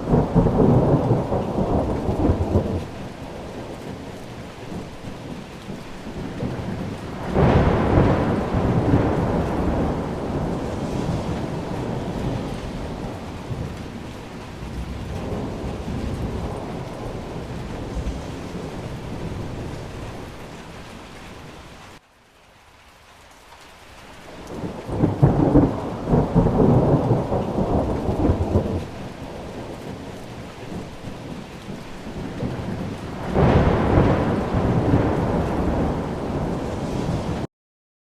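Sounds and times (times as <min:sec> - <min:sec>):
heavy rain and storm runoff: 0:00.0 - 0:37.5
loud rumbling surges: 0:06.8 - 0:20.5, 0:33.4 - 0:37.5.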